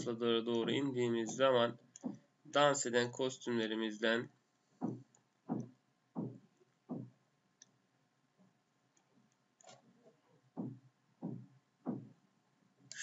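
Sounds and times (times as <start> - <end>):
computer mouse clicks: 1.9 - 2.2, 9.0 - 9.8.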